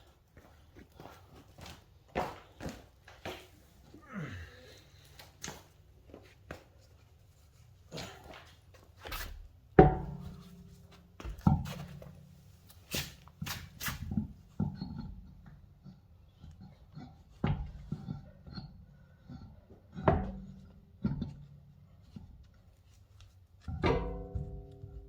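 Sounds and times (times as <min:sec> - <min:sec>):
tools and car parts knocking: 0:09.8 - 0:12.2, 0:19.7 - 0:21.4.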